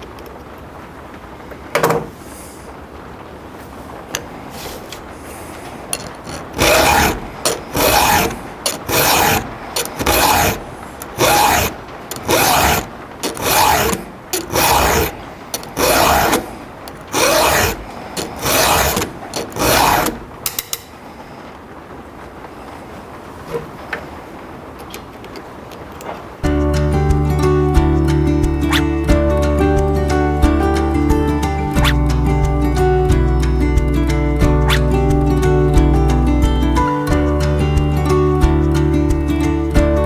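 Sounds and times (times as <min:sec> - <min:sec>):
file rasping on chainsaw chain: 0:06.0 - 0:20.2, 0:26.4 - 0:37.9.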